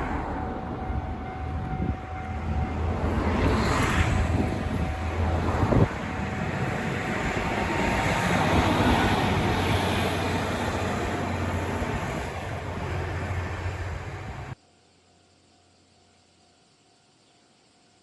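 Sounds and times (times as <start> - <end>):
diesel engine drone: 0.0 - 14.6
train wheel and rail noise: 0.0 - 14.6.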